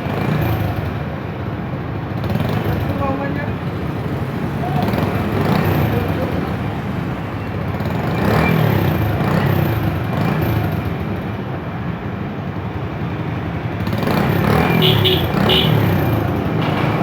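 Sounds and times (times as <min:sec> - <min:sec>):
motorcycle engine running: 0:13.9 - 0:17.0.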